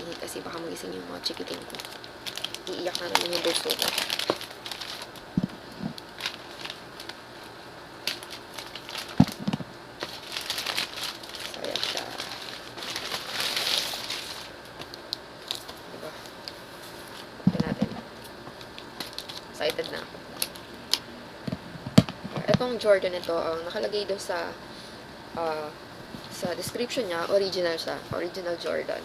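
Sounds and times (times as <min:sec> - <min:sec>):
packaging crinkling and rustling: 0:01.2 - 0:18.0, 0:18.6 - 0:21.0.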